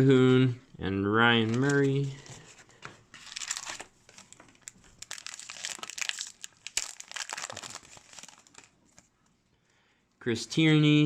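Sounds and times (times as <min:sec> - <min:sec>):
wrapper tearing and crinkling: 0:03.2 - 0:09.1.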